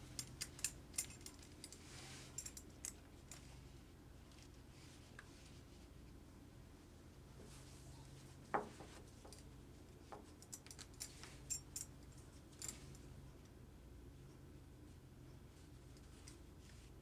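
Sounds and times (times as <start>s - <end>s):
light clicks and scrapes: 0.0s - 3.6s.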